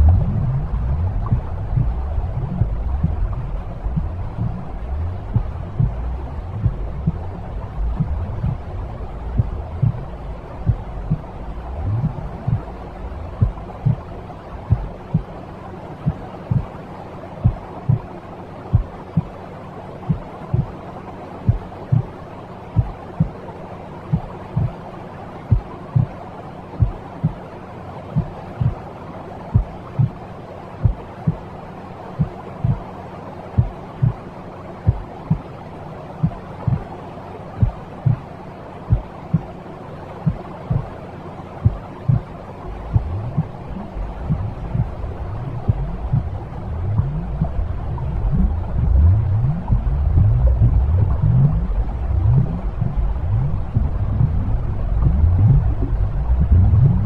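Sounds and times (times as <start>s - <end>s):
heartbeat thumps: 0.0s - 15.4s, 16.0s - 16.8s, 17.4s - 19.4s, 20.0s - 20.8s, 21.5s - 23.4s, 24.1s - 24.8s, 25.5s - 26.2s, 26.8s - 27.4s, 28.2s - 28.8s, 29.5s - 30.2s, 30.8s - 31.5s, 32.2s - 32.9s, 33.6s - 34.2s, 34.8s - 35.5s, 36.2s - 36.9s, 37.6s - 38.3s, 38.9s - 39.6s, 40.2s - 41.0s, 41.6s - 57.0s
low rushing noise: 0.0s - 57.0s
white noise hiss: 0.0s - 57.0s.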